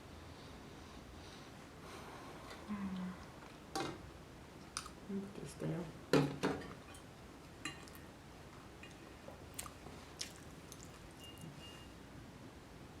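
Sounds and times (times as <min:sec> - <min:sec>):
faint chewing of food: 0:04.6 - 0:05.0, 0:07.5 - 0:11.8.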